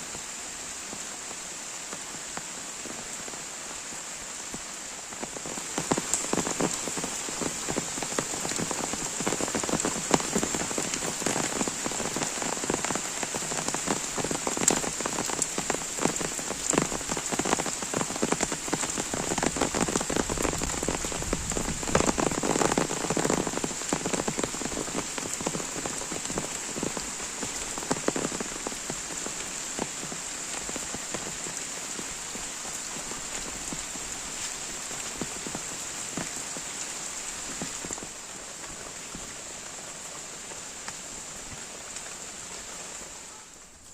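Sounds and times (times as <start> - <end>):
rain falling: 0.0 - 43.9
raindrops hitting nearby: 0.0 - 43.9.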